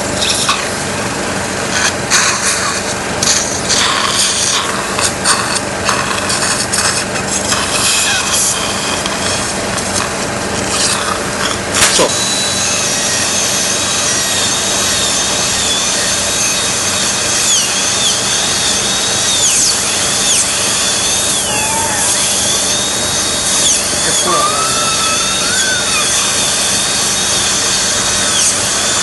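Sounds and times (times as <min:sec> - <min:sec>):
dental drill whining: 0:00.0 - 0:01.0, 0:01.7 - 0:29.0.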